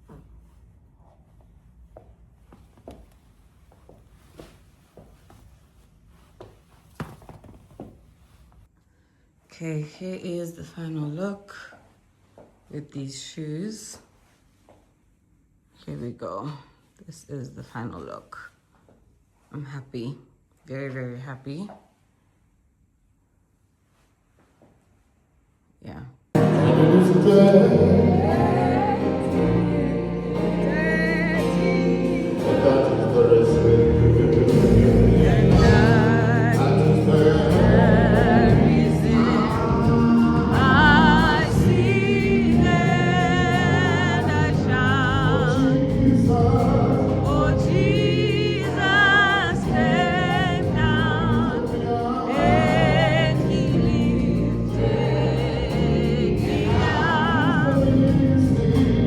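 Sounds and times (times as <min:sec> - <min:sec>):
gospel choir singing: 0:26.4 - 0:59.0
sustained accompaniment: 0:26.4 - 0:59.0.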